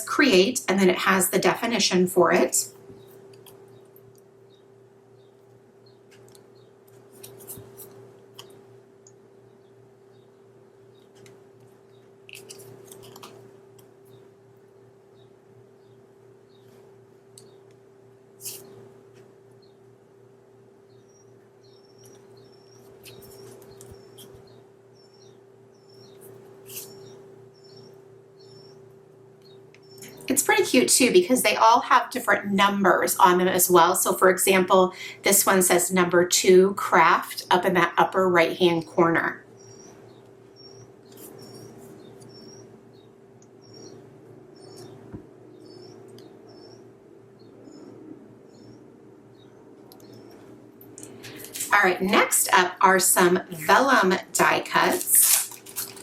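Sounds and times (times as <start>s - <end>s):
steady low hum: 0.0s - 56.0s
paper and plastic packaging rustling: 51.1s - 51.8s, 54.6s - 56.0s.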